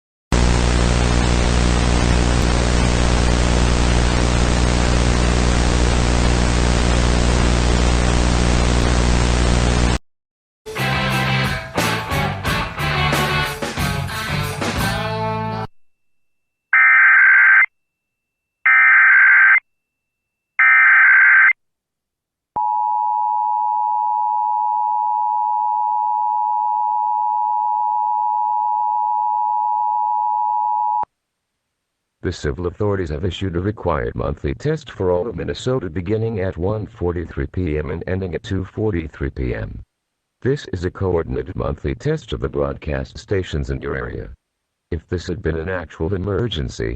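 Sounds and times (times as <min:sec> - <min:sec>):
static hiss: 0:00.4 - 0:10.0
music track: 0:10.7 - 0:15.7.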